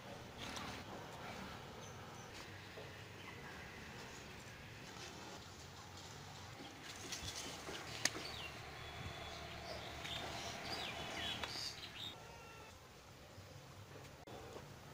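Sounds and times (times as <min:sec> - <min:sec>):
small birds chirping: 0:06.4 - 0:12.7.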